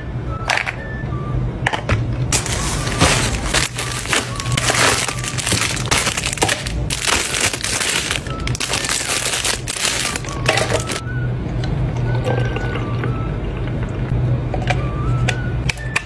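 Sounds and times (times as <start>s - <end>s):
dense crinkling and crunching: 2.3s - 11.0s.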